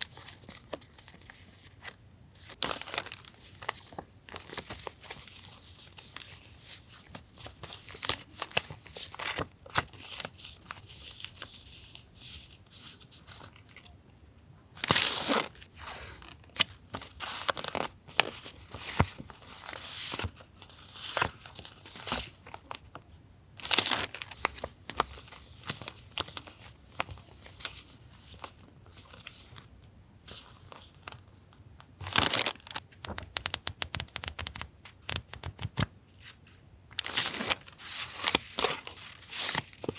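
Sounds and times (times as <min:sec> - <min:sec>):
paper rustling and crinkling: 0:00.0 - 0:13.9, 0:32.0 - 0:39.9.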